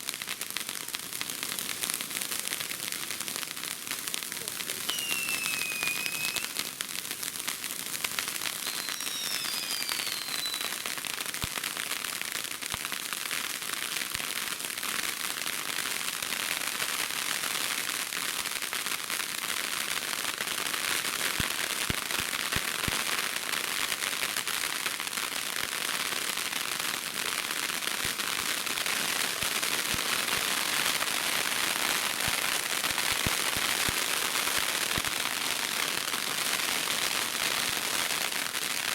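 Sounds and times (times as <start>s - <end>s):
fireworks crackling: 0.0s - 38.9s
falling firework whistles: 4.8s - 6.8s, 8.2s - 11.5s.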